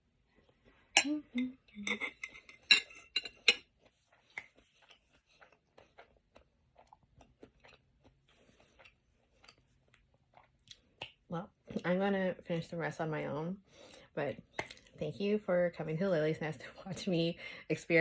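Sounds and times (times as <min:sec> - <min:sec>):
utensils clinking against a bowl: 0:01.0 - 0:03.7.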